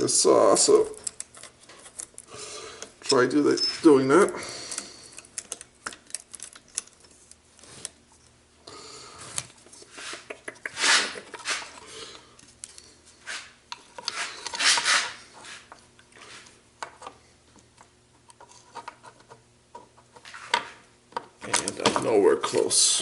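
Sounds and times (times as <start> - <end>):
metal scraping rubs: 9.8 - 11.8, 13.2 - 16.5.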